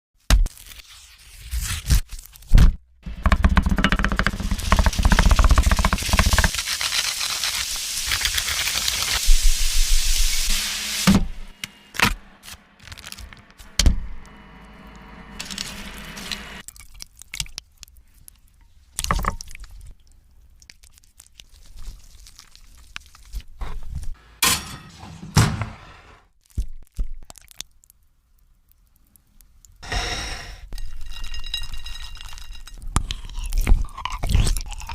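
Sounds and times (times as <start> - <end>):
crunching while eating: 20.6 - 23.5, 32.1 - 34.9.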